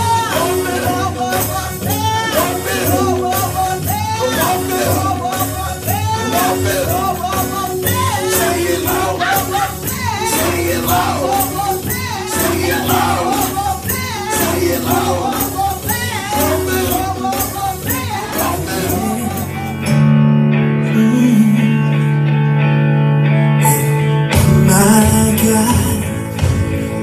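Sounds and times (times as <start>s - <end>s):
steady percussion: 0.0s - 20.0s
tambourine: 0.0s - 20.1s
person singing: 0.0s - 23.0s, 23.6s - 27.0s
live band playing: 0.0s - 27.0s.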